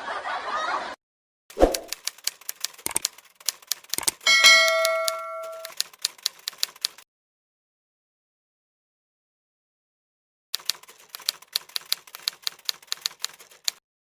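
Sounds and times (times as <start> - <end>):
rapid clacking key strikes: 1.9 - 7.0
bell ding: 4.3 - 5.7.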